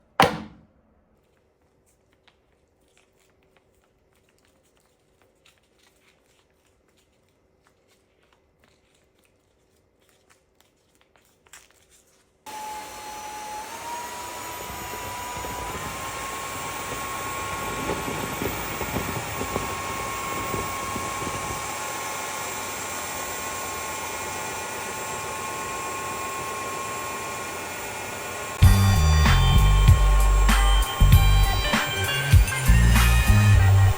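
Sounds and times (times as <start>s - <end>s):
vacuum cleaner motor whining: 12.5s - 33.9s.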